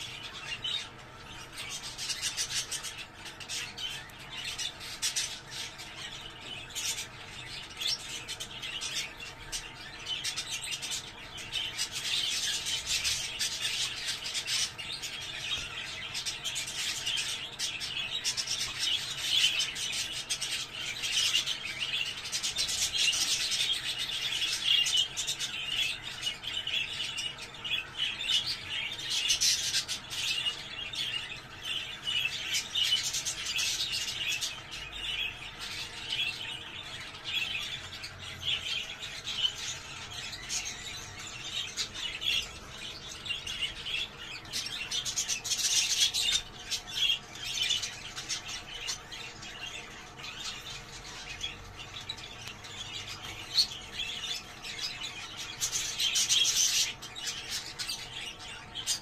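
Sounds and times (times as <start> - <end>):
budgerigars chattering and warbling: 0.0 - 59.0.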